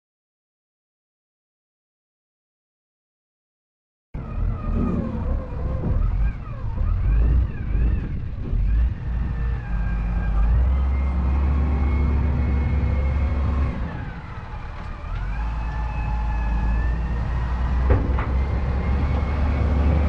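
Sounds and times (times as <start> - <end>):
diesel engine rumble and whine: 4.2 - 20.0
sharp knocks: 17.8 - 19.3.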